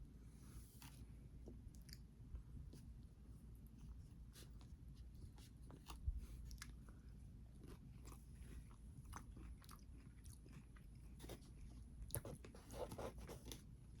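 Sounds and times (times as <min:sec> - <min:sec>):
chewing and biting food: 0:05.5 - 0:13.7.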